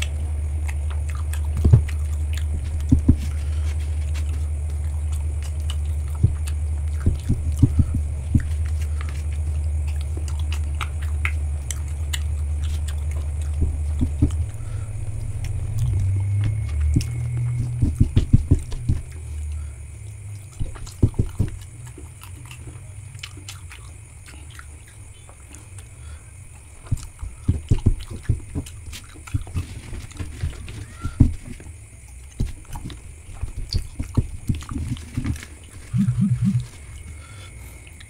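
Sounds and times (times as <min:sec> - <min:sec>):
chewing and mouth sounds: 0:00.0 - 0:38.0.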